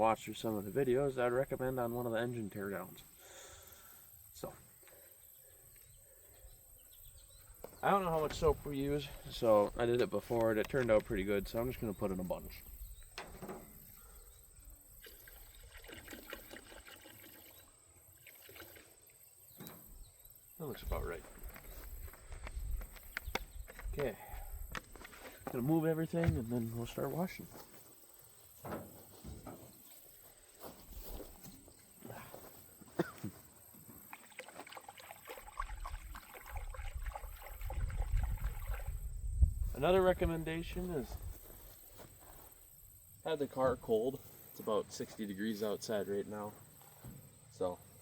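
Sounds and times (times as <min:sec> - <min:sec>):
objects knocking and rustling: 0:13.1 - 0:13.9, 0:28.6 - 0:30.0
liquid pouring into a bucket: 0:15.0 - 0:19.4, 0:34.0 - 0:39.1.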